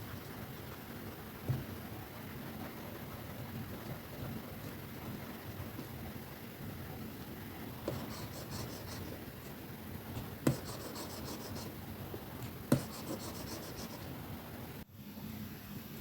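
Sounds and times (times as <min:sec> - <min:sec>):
white noise hiss: 0:00.0 - 0:16.0
stylus scratching on tablet: 0:07.8 - 0:09.6, 0:10.2 - 0:11.8, 0:12.7 - 0:14.2.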